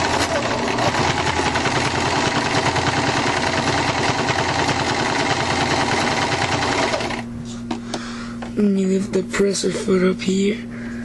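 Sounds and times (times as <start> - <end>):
sewing machine clattering: 0.0 - 7.2.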